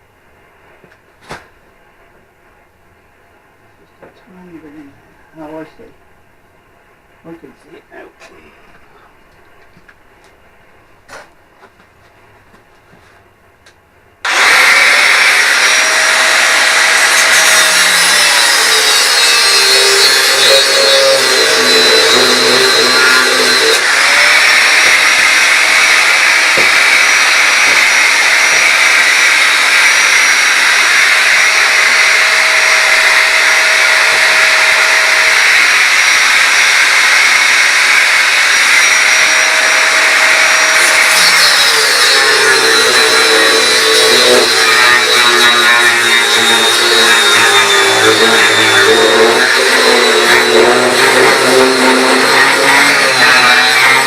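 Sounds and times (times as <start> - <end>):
angle grinder cutting steel: 14.2 - 54.0.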